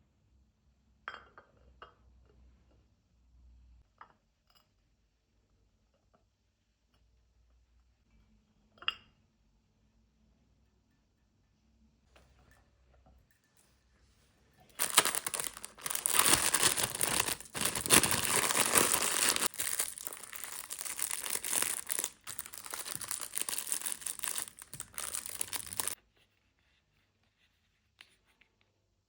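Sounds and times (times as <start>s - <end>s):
packaging crinkling and tearing: 14.8s - 26.0s.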